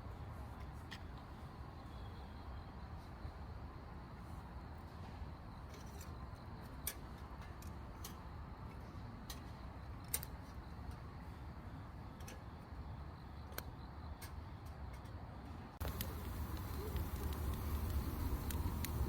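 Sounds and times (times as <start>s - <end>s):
steady low background noise: 0.0s - 19.0s
raindrops dripping on a tent: 15.8s - 19.0s.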